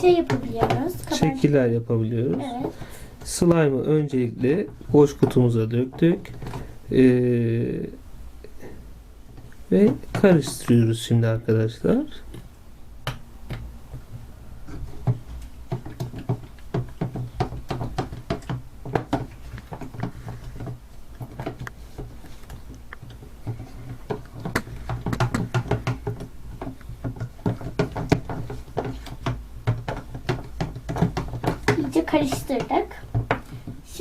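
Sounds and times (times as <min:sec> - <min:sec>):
spoon stirring slime: 0:14.7 - 0:34.0.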